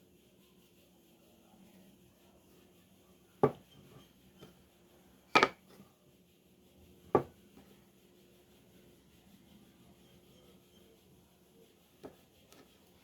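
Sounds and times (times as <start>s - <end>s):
hard objects knocking: 5.4s - 5.6s.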